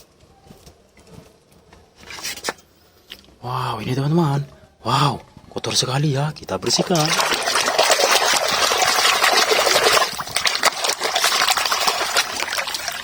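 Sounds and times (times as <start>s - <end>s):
water running and splashing: 6.6s - 13.0s.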